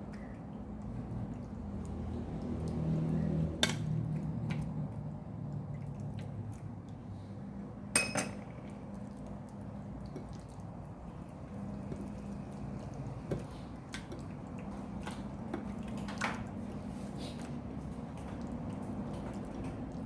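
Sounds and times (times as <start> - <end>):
dishes clinking: 8.0 - 8.5.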